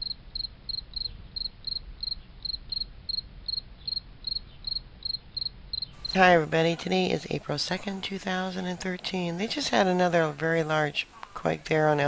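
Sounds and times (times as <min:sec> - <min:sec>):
insect chirping: 0:00.0 - 0:06.4.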